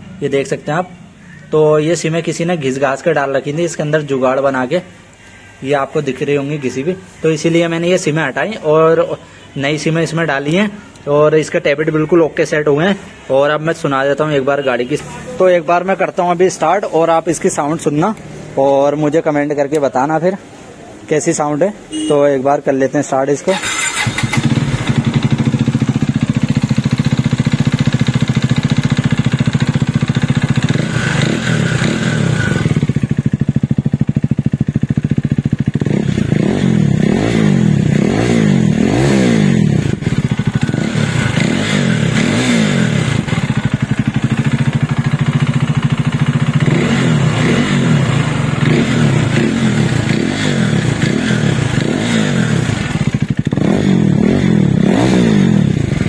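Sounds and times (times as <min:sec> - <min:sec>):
motorcycle engine idling and revving: 0:23.5 - 0:56.0.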